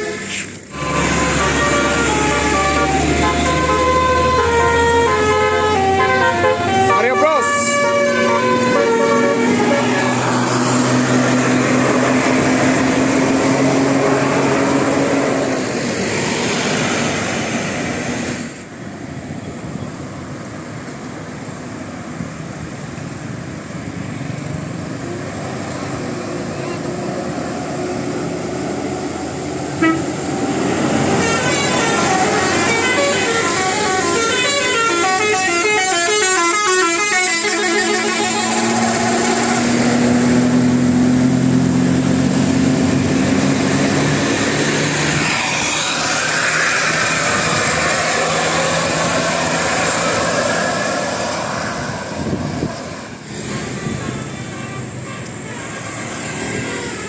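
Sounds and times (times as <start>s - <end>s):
musical bus horn alternating tones: 0.0s - 15.3s, 29.7s - 30.4s, 31.0s - 39.9s, 53.3s - 57.0s
bus engine passing: 0.0s - 57.0s.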